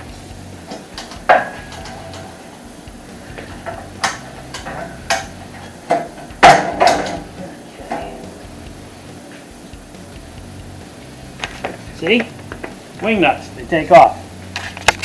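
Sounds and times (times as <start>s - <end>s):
metal hardware knocking on steel rack: 0.7s - 2.4s, 3.4s - 8.4s.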